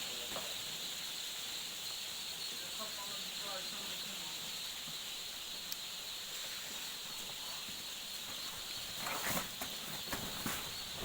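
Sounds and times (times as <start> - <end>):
rustling and knocking: 8.3 - 11.0.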